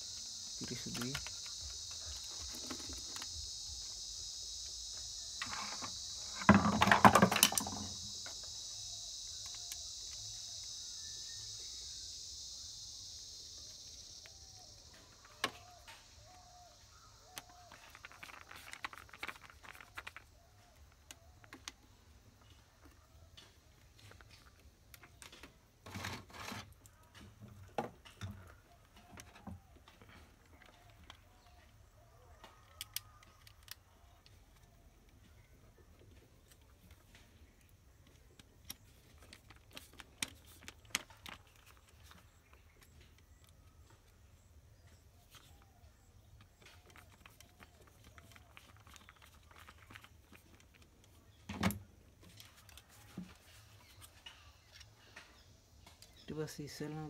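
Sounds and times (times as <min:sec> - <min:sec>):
insects chirring: 0:00.0 - 0:57.0
tools clattering: 0:05.4 - 0:08.0
small clicks and rustles: 0:14.9 - 0:56.3.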